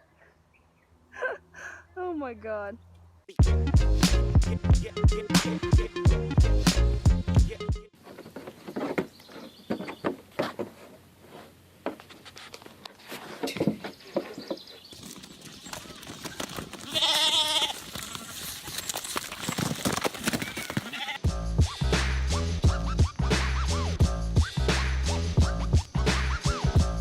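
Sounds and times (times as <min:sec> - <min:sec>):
goat or sheep bleating: 0:16.8 - 0:18.4, 0:20.8 - 0:21.2.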